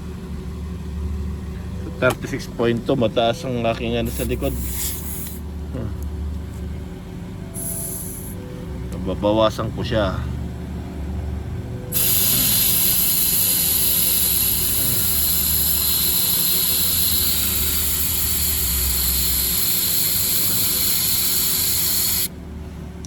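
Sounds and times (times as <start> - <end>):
air hissing out of tire valve: 4.1 - 5.4, 7.6 - 8.4, 11.9 - 22.3.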